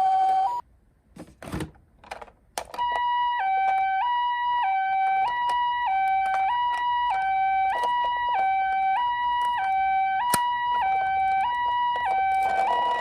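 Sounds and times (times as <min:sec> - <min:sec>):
toy ambulance siren: 0:00.0 - 0:00.6, 0:02.7 - 0:13.0
plastic clicks and knocks: 0:05.0 - 0:13.0.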